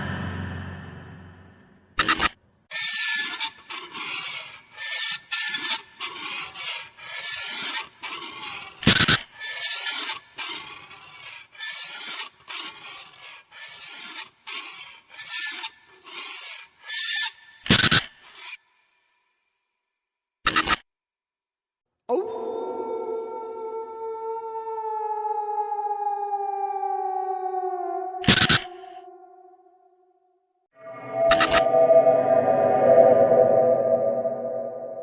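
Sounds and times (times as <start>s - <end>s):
loud sharp hits: 0.0s - 2.0s
harsh rasping scrapes: 2.7s - 17.4s.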